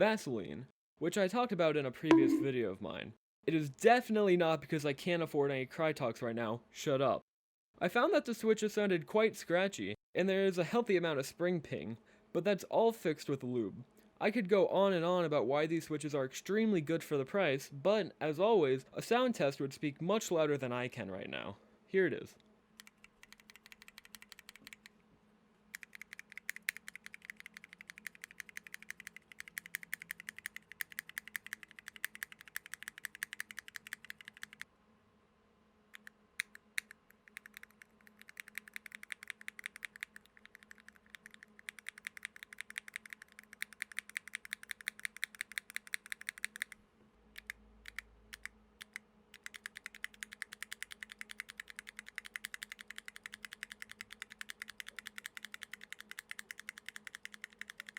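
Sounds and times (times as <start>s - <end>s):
mechanical keyboard key clacks: 25.8s - 34.6s, 36.0s - 46.8s, 47.4s - 57.9s.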